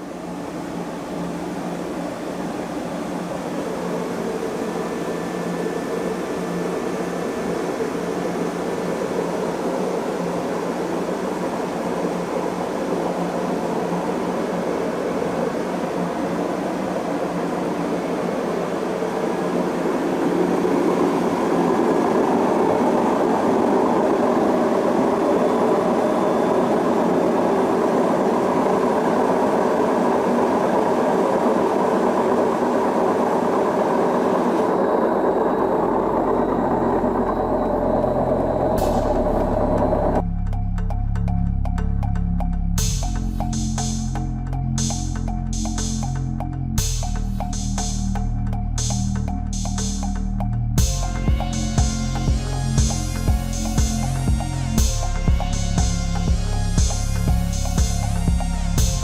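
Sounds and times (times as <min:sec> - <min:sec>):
washing machine spinning: 0:00.0 - 0:40.2.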